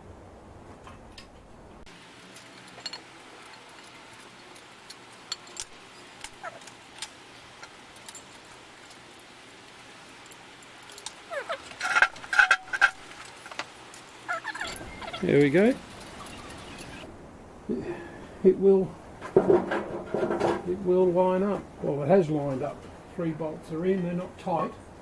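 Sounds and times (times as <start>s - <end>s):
metal clatter: 0.8s - 17.1s
metal parts clicking: 0.8s - 17.1s.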